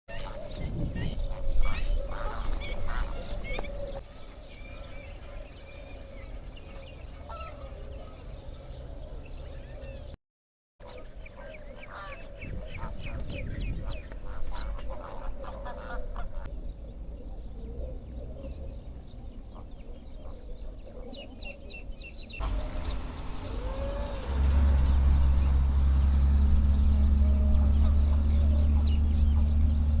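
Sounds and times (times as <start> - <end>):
flamingos honking: 6.7 - 8.7, 14.2 - 16.5, 22.4 - 29.8.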